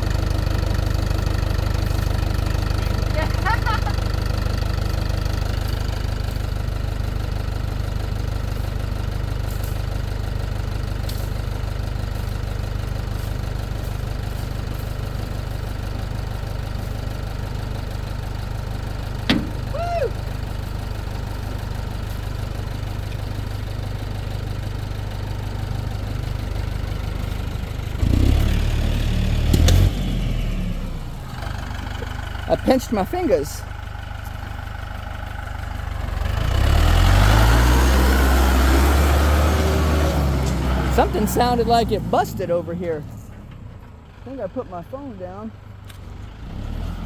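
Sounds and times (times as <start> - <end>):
tractor engine idling: 0.0 - 47.0.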